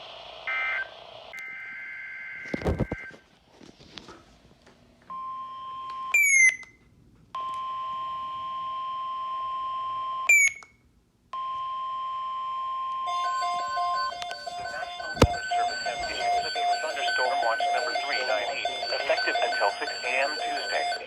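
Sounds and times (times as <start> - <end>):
high warning beep: 13.1 - 21.0
short repeated beeps: 13.1 - 21.0.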